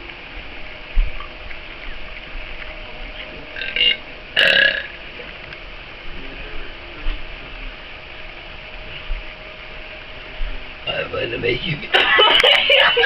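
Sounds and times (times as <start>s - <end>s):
person belching loudly: 3.6s - 5.0s.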